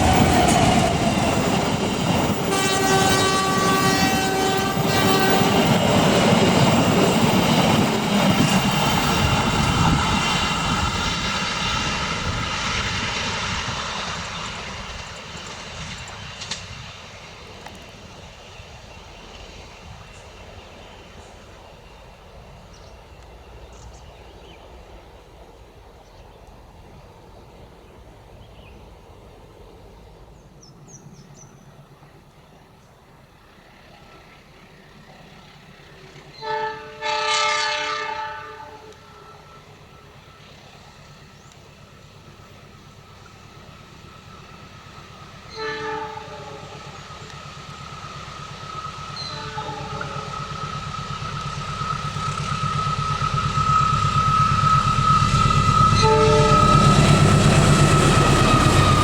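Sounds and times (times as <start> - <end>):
locomotive engine rumble: 0.0 - 36.4, 38.7 - 59.0
multi-tone train horn: 2.2 - 6.3, 36.2 - 40.3, 45.4 - 47.4, 48.6 - 59.0.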